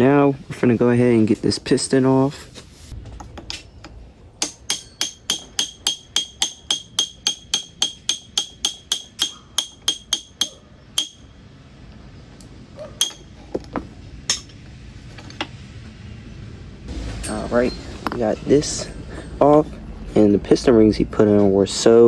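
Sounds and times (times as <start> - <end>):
hammer tapping on metal: 4.4 - 11.3, 13.0 - 13.3
metallic clinks: 13.0 - 13.4.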